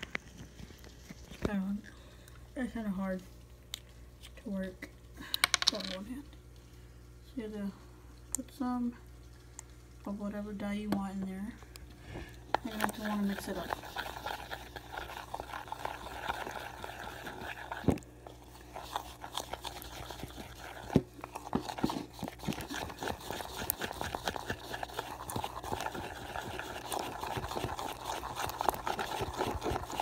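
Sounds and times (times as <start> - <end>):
sticky stirring and scraping: 12.2 - 30.0.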